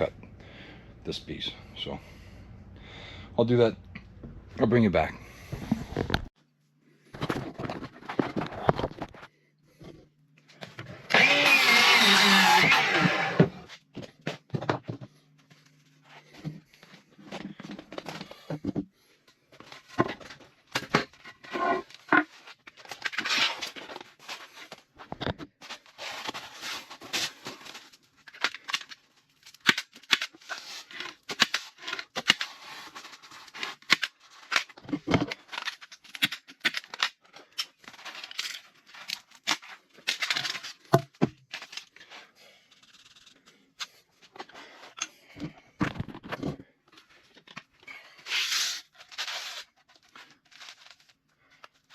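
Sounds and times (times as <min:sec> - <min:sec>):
rustling and scraping: 0:05.3 - 0:06.4, 0:07.0 - 0:11.0.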